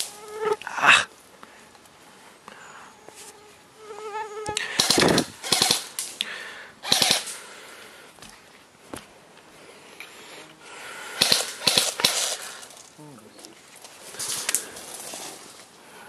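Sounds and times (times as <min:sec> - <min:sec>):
airsoft guns full-auto firing: 0:04.7 - 0:06.1, 0:06.8 - 0:07.4, 0:11.2 - 0:12.6.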